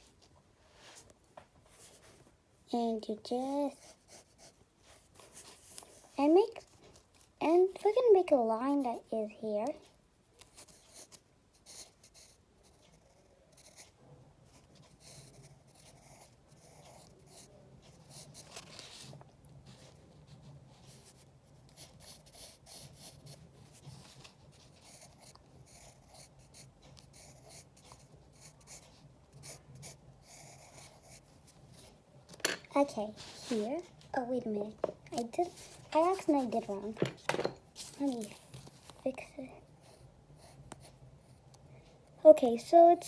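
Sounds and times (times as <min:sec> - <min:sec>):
pencil scratching on paper: 0:03.6 - 0:06.8, 0:10.5 - 0:31.9, 0:32.8 - 0:33.9, 0:35.1 - 0:37.0, 0:39.8 - 0:41.5.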